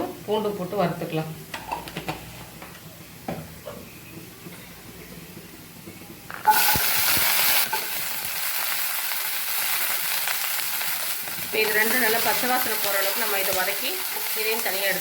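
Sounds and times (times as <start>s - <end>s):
food sizzling in hot oil: 6.4s - 15.0s.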